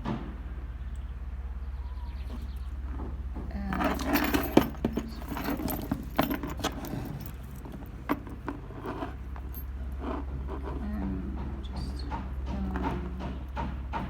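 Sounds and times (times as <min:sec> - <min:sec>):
metal hardware jangling: 0:03.6 - 0:10.8.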